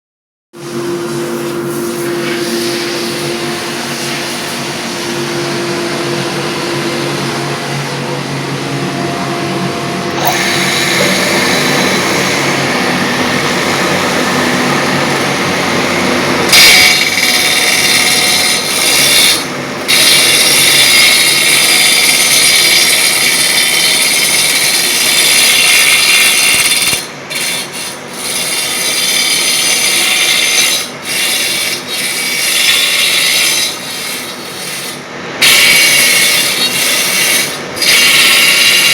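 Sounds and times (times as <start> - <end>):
lathe motor hum: 2.2 - 38.9
cutter biting into wood: 10.2 - 12.2.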